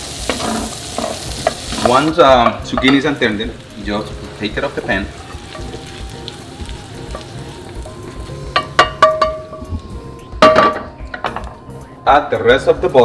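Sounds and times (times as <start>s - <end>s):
zucchini sizzling in a frying pan: 0.0s - 9.2s
utensil knocking against pan: 0.3s - 5.9s.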